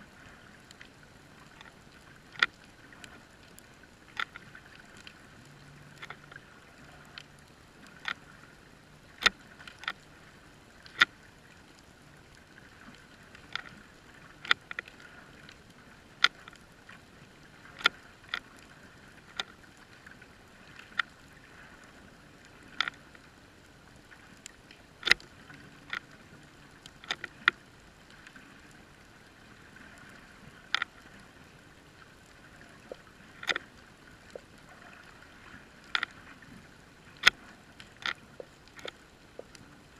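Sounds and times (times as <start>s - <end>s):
sharp underwater clicks and snaps: 0.6s - 8.2s, 9.1s - 10.1s, 10.8s - 11.9s, 12.8s - 16.6s, 17.7s - 19.6s, 20.6s - 21.1s, 22.6s - 23.3s, 24.3s - 28.4s, 30.7s - 31.1s, 32.6s - 34.8s, 35.8s - 36.2s, 37.2s - 39.7s.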